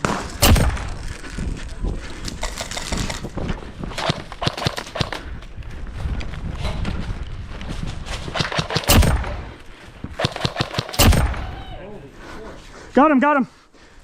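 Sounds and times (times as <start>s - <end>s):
footsteps: 0.0s - 14.0s.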